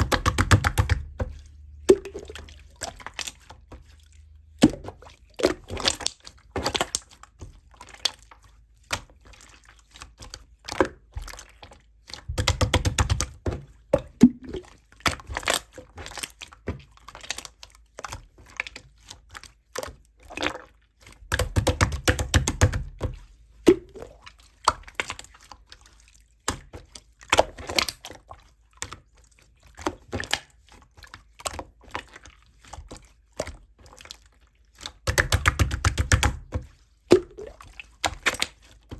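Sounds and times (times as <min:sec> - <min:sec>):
slime rapid crackling: 0:00.0 - 0:03.5, 0:12.2 - 0:13.4, 0:34.8 - 0:38.7.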